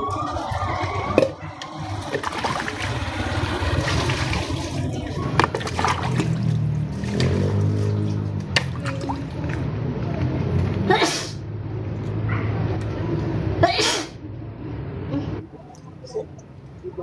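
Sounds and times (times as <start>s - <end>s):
water running: 1.4s - 9.5s.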